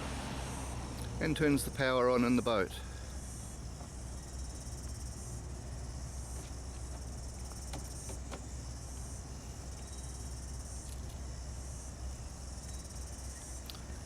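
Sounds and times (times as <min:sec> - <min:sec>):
high-pitched insect chorus: 0:00.0 - 0:14.0
low steady rumble: 0:00.0 - 0:14.0.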